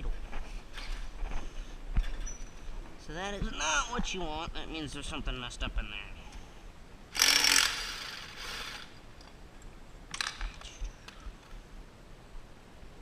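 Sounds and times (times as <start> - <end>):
mechanical ratcheting clatter: 7.1 - 9.0.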